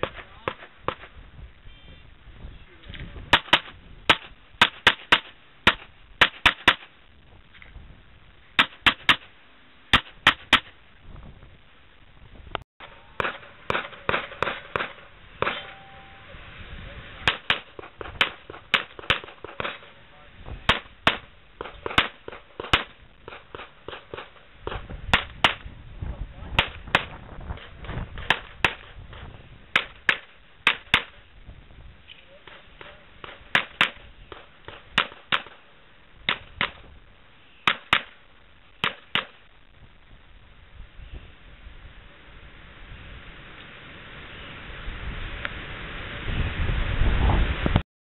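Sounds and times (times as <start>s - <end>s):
rapid gunshots: 3.3s - 6.9s, 8.6s - 9.3s, 13.2s - 15.6s, 17.3s - 19.9s.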